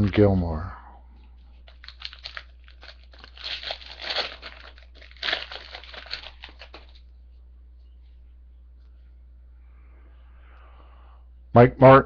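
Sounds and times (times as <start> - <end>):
wrapper tearing and crinkling: 1.6 - 7.0.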